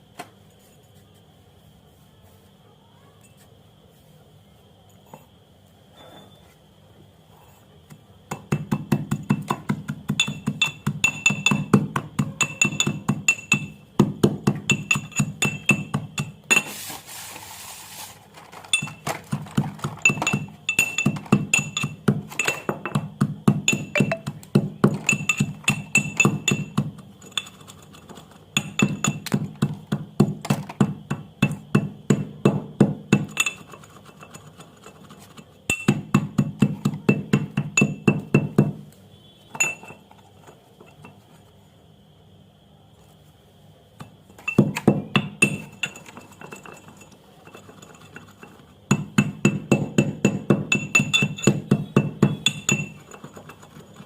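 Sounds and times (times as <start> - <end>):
pounding in a ringing vessel: 8.3 - 16.8, 20.0 - 27.7, 28.5 - 35.0, 35.7 - 40.1, 44.4 - 54.0
crumbling powder hiss: 16.6 - 18.5.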